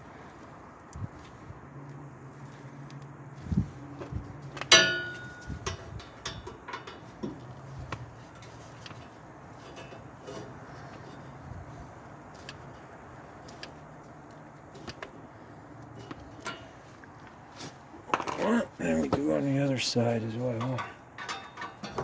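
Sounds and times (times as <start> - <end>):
metal tools clanking: 4.6 - 7.5, 8.3 - 11.4, 20.0 - 22.0
loud ringing metallic clank: 4.7 - 6.9.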